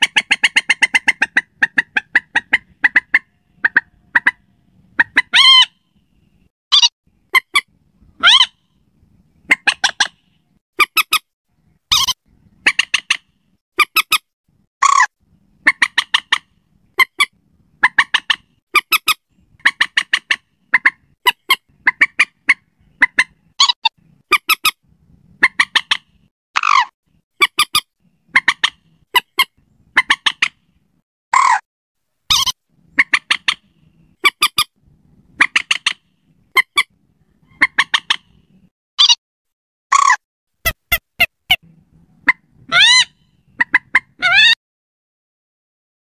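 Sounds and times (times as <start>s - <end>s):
moorhen calls: 0.0s - 5.8s, 42.2s - 44.6s.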